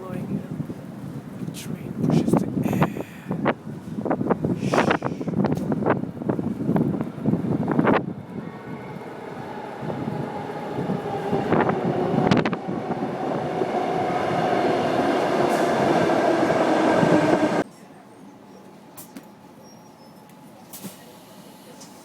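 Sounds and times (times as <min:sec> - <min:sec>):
metro train rumble and whine: 0:00.0 - 0:22.0.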